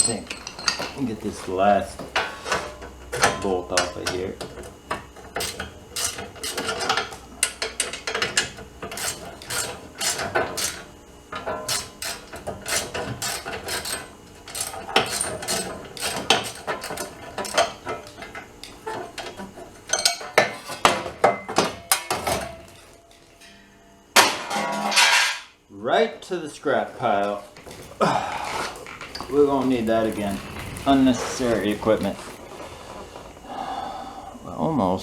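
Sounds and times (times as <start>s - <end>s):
metal clinks and knocks: 0.0s - 1.2s, 12.5s - 23.8s.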